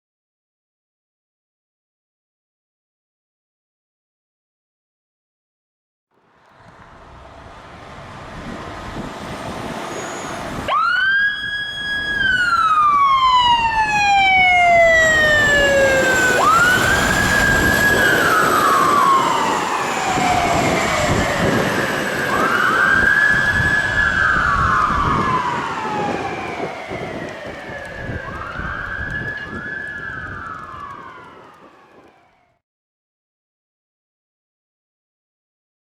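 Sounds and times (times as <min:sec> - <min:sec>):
low truck engine rumble: 0:06.2 - 0:32.2
electronic siren wailing: 0:09.8 - 0:32.6.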